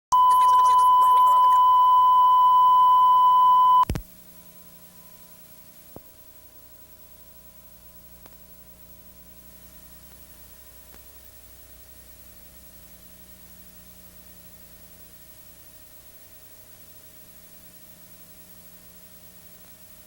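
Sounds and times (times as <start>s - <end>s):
low hum: 0.1s - 3.8s
steady test tone: 0.1s - 3.9s
faint tape hiss: 0.1s - 20.0s.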